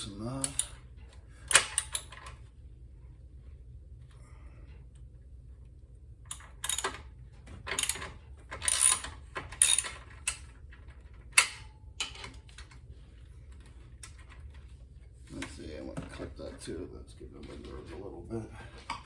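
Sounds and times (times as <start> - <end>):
socket ratchet clicking: 0.4 - 0.8, 1.5 - 2.1, 6.3 - 7.0, 7.7 - 10.5.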